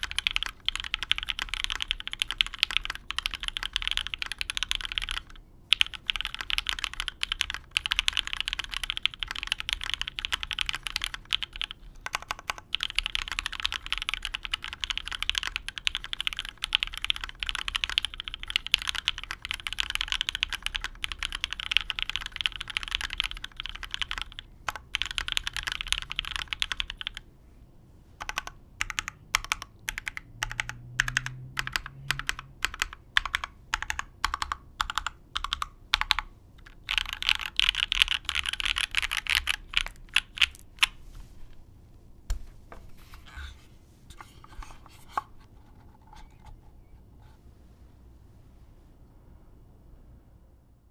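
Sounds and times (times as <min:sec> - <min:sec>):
typing on mechanical keyboard: 0:00.0 - 0:27.2, 0:28.2 - 0:41.0.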